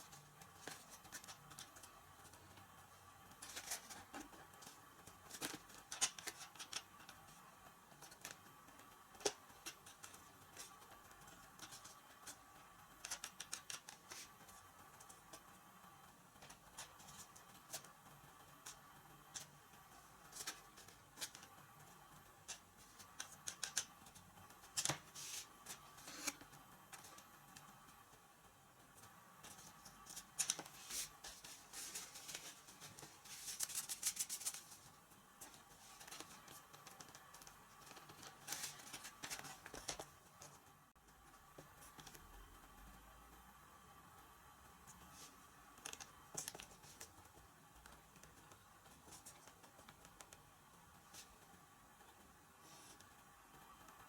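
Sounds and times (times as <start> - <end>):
plastic parts clicking and tapping: 22.4 - 25.1.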